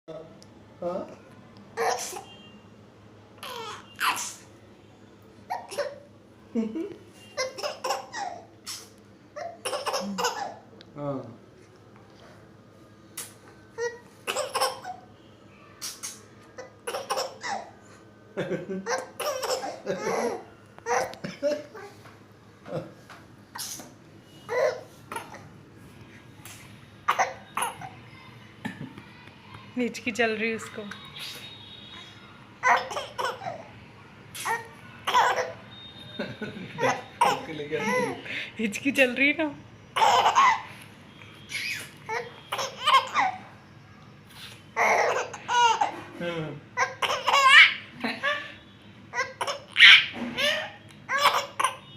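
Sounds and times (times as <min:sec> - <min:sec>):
baby laughing: 0:18.8 - 0:21.9, 0:34.5 - 0:35.6, 0:36.6 - 0:38.2, 0:40.0 - 0:40.7, 0:41.6 - 0:43.4, 0:44.8 - 0:46.0, 0:46.8 - 0:48.4, 0:49.2 - 0:51.8.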